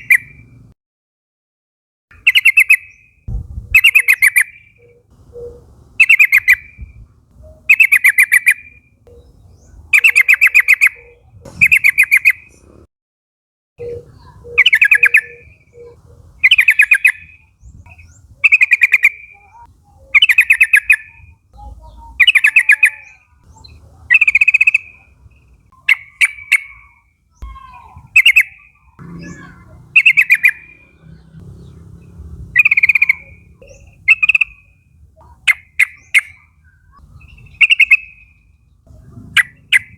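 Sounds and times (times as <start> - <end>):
bulbul chattering call: 2.1 - 12.8, 13.8 - 39.9.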